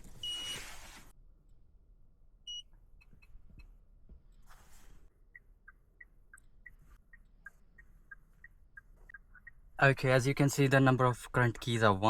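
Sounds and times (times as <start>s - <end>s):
soft regular ticking: 5.2s - 12.0s.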